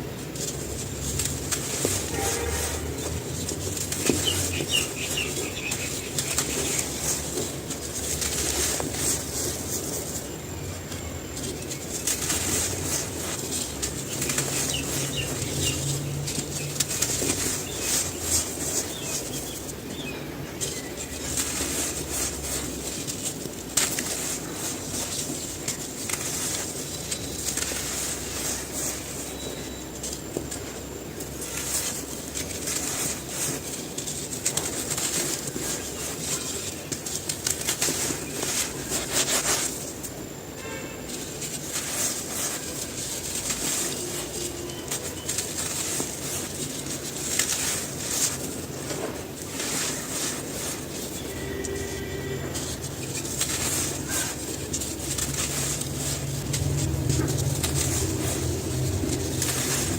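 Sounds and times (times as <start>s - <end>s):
cement chunks crunching: 0.0s - 59.9s.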